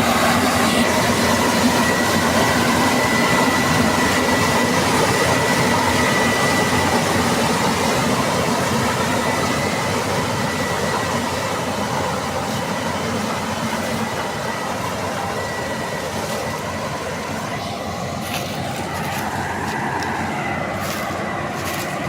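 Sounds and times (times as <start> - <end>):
combine harvester running: 0.0 - 22.0.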